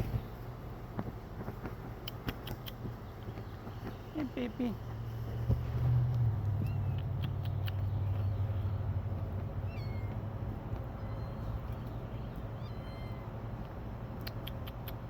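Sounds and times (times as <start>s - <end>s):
steady low hum: 0.0s - 15.0s
kittens mewing: 6.4s - 15.0s.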